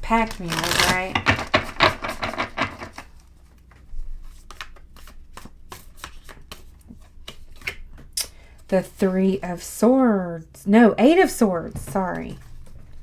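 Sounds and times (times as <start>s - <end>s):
cards being shuffled: 0.2s - 8.1s.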